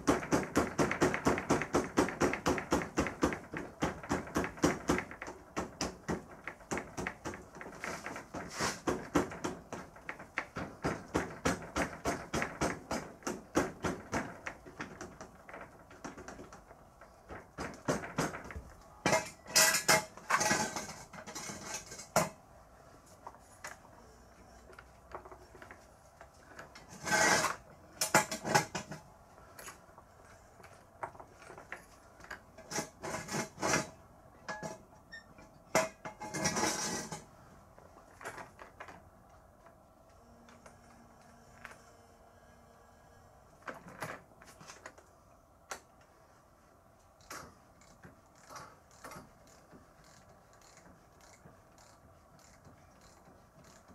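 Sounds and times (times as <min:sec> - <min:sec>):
ratchet clicking: 0:47.2 - 0:53.9.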